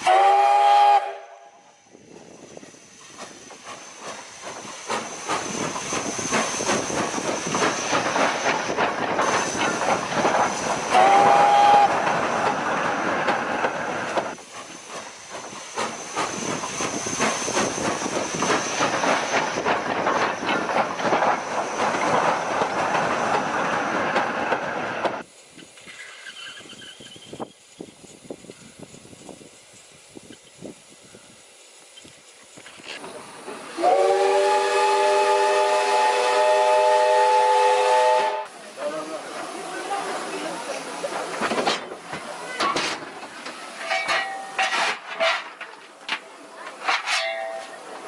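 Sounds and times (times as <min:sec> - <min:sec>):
steam whistle blast: 0:00.0 - 0:01.7, 0:10.9 - 0:12.0, 0:33.7 - 0:38.5
steam hiss: 0:00.0 - 0:48.0
steam locomotive exhaust chuffs: 0:00.0 - 0:48.0.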